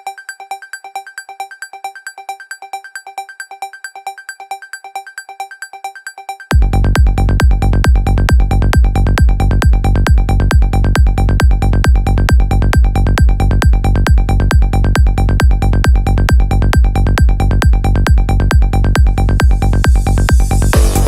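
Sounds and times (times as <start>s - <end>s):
fast kick-drum beat: 6.5s - 21.0s
sustained bass: 6.5s - 21.0s
electronic dance music: 16.8s - 21.0s.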